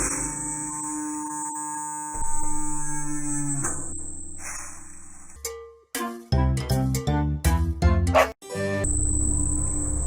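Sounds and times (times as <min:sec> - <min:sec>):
upbeat cartoon music: 0:06.0 - 0:08.8.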